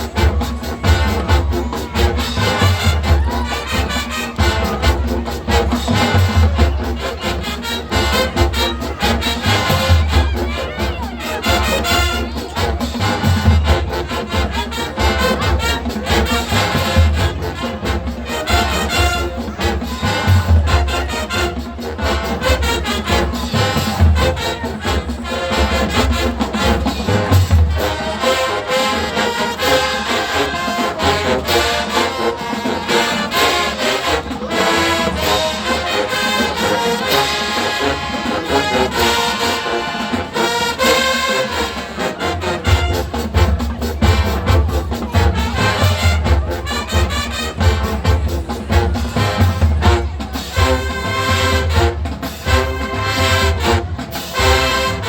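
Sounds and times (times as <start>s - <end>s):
marching band playing: 0.0s - 55.0s.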